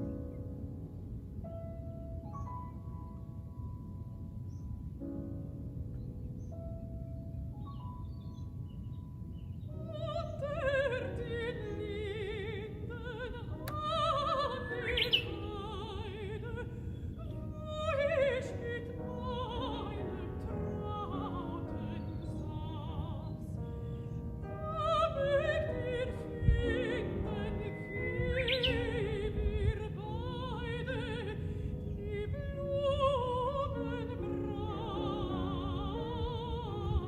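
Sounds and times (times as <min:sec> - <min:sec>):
operatic singing with vibrato: 0:09.7 - 0:37.0.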